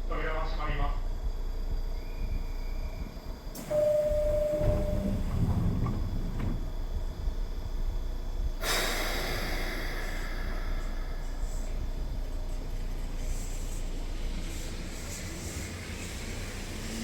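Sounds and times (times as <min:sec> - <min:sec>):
loud rush of train noise: 0:00.0 - 0:17.0
train rumble: 0:00.0 - 0:17.0
brief steady tone: 0:03.6 - 0:05.5.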